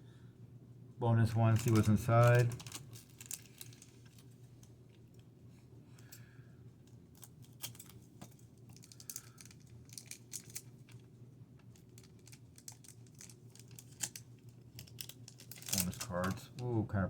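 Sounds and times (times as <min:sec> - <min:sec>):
steady low hum: 0:00.0 - 0:17.0
wrapper crinkling: 0:01.4 - 0:05.2, 0:07.1 - 0:11.1, 0:11.7 - 0:16.7.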